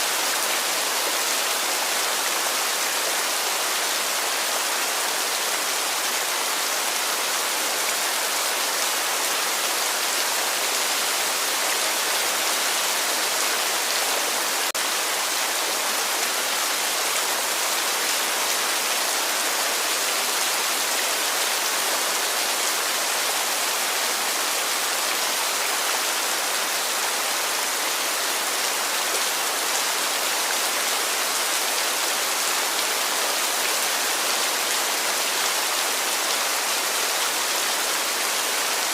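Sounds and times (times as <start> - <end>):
heavy rain falling: 0.0 - 38.9.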